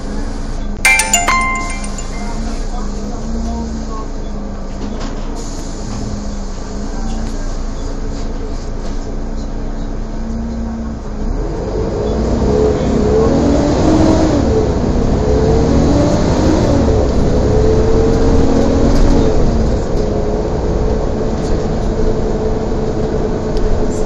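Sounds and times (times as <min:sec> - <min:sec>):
bus engine humming: 0:16.7 - 0:24.0.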